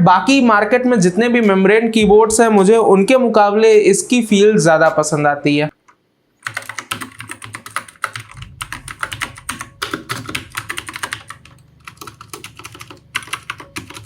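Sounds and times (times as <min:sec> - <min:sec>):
mechanical keyboard typing: 0:06.4 - 0:14.0.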